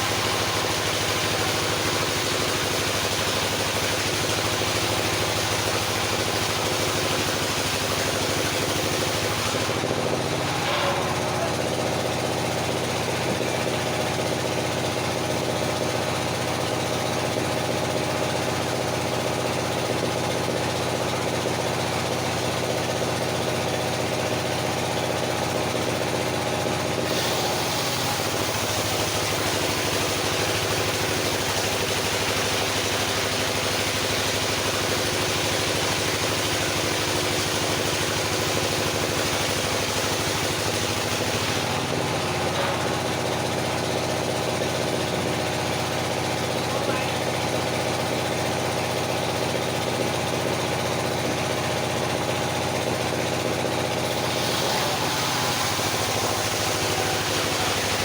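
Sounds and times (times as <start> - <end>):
engine-driven circular saw running: 0.0 - 58.0
saw blade cutting wood: 4.7 - 14.9, 25.8 - 47.2, 51.0 - 58.0.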